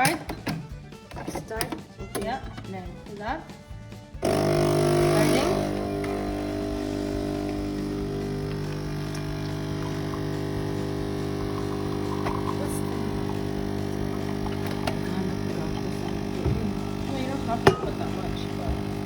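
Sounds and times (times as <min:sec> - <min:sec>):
coffee machine pump humming: 0:04.2 - 0:19.0.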